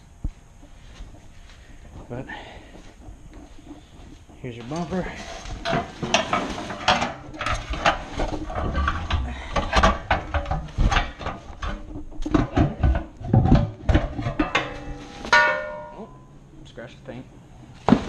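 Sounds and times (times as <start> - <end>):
metallic clunks and scraping: 4.6 - 16.3.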